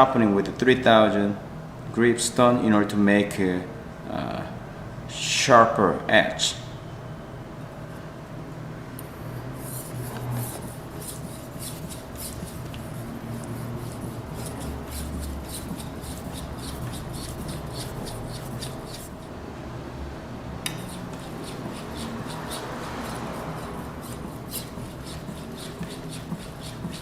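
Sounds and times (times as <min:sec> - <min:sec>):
knife scraping on wet whetstone: 0:09.6 - 0:19.3, 0:20.7 - 0:27.0.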